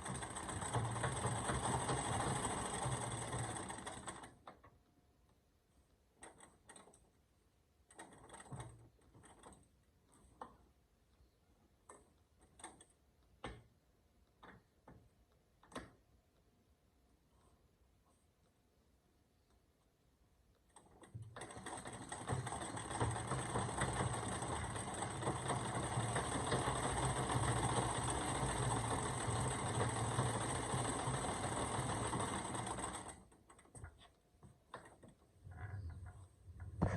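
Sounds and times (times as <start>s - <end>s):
sewing machine stitching: 0.0s - 4.6s, 7.9s - 10.2s, 20.7s - 36.9s.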